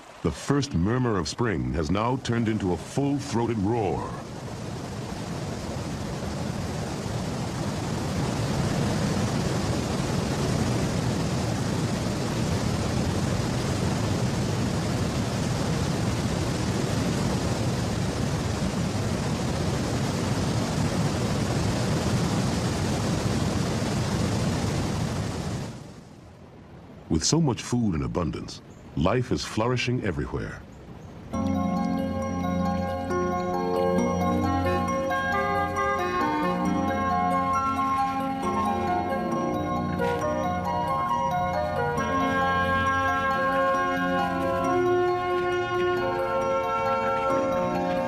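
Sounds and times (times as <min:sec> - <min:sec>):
roar of rushing river water: 0:00.0 - 0:31.4.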